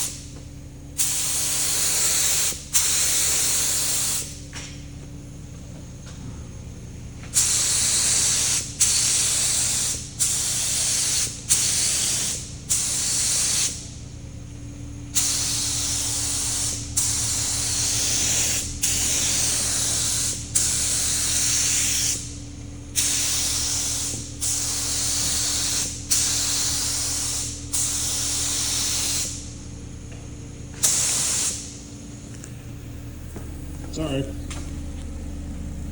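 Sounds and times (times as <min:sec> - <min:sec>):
steady low hum: 0:00.0 - 0:35.9
paint spray gun hissing bursts: 0:01.0 - 0:04.4, 0:07.3 - 0:13.9, 0:15.1 - 0:22.4, 0:23.0 - 0:29.5, 0:30.8 - 0:31.8.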